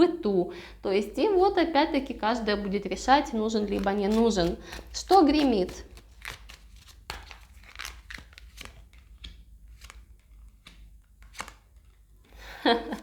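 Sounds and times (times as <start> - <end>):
papery rustling: 2.4 - 13.0
cards snapping: 3.6 - 12.0.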